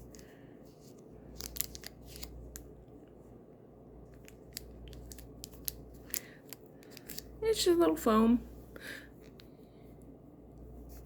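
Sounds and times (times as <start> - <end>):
plastic package clicking and snipping: 1.3 - 2.7, 4.1 - 7.3.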